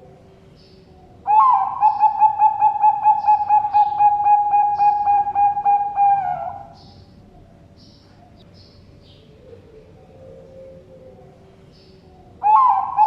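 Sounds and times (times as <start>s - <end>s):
dove cooing rapidly: 1.0s - 7.5s, 9.2s - 13.0s.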